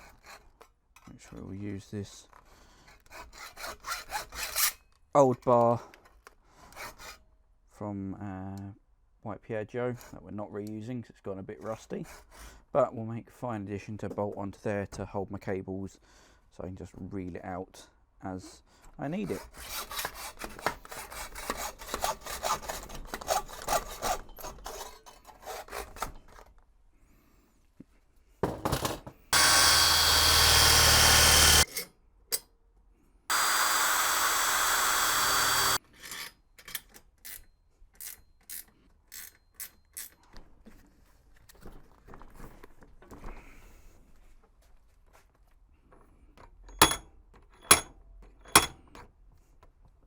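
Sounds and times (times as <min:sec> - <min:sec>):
power tool running: 0:29.3 - 0:31.7, 0:33.3 - 0:35.8.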